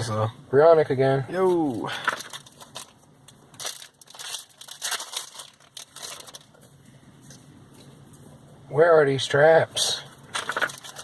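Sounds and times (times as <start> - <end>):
foil card packs crinkling: 1.4 - 6.8, 10.2 - 11.0.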